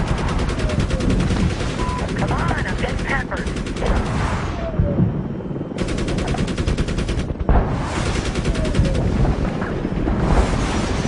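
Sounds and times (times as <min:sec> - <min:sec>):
automatic machine-gun fire: 0:00.0 - 0:04.3, 0:05.8 - 0:09.1
continuous low rumble: 0:00.0 - 0:11.0.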